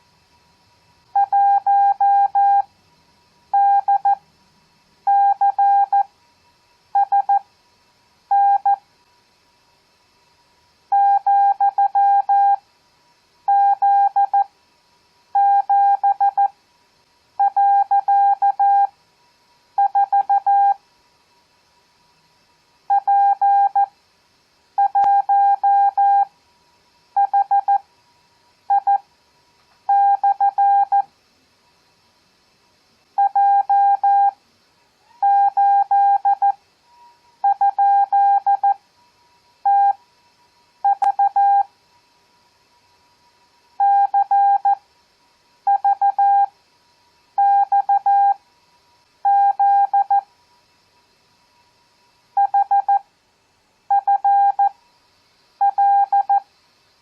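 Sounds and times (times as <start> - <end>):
morse code beeps: 1.2 - 2.7, 3.6 - 4.2, 5.1 - 6.0, 7.0 - 7.4, 8.3 - 8.8, 11.0 - 12.6, 19.8 - 20.8, 22.9 - 23.9, 24.8 - 26.3, 27.2 - 27.8, 28.7 - 29.0, 29.9 - 31.0, 33.2 - 34.3, 39.7 - 40.0, 40.9 - 41.6, 43.8 - 44.8, 45.7 - 46.5, 47.4 - 48.4, 49.3 - 50.2, 52.4 - 53.0, 53.9 - 54.7, 55.6 - 56.4.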